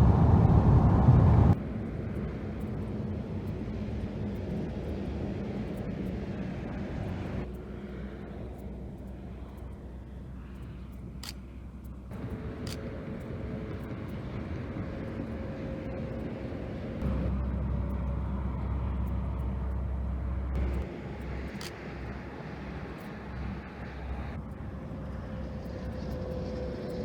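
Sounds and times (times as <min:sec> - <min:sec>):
faint steady whine: 0:00.0 - 0:27.0
road and engine rumble: 0:00.0 - 0:27.0.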